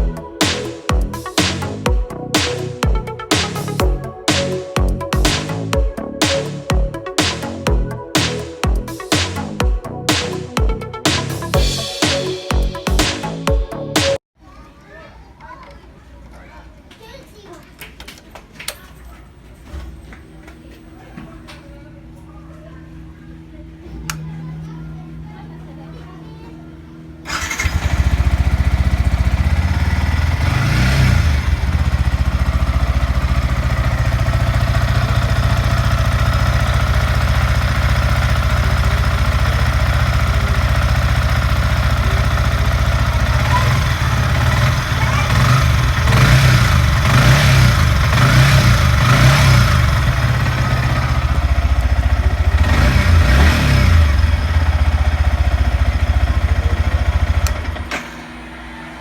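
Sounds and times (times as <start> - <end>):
motorcycle engine idling and revving: 27.3 - 58.7.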